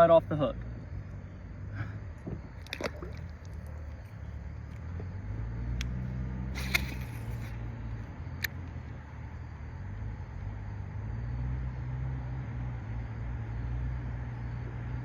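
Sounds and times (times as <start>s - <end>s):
low motor drone: 0.0s - 15.0s
sharp clicks: 6.6s - 7.6s.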